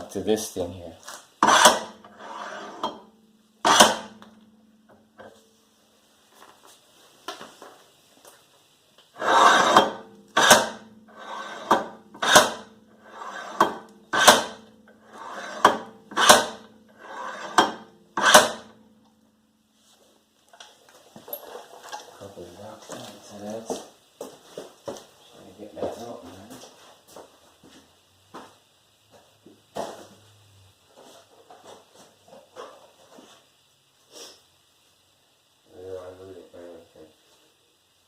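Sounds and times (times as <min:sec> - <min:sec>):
hammer striking wheel hub: 0:02.8 - 0:04.4, 0:09.6 - 0:10.9, 0:11.7 - 0:12.7, 0:13.6 - 0:14.7, 0:15.6 - 0:16.7, 0:17.5 - 0:18.8.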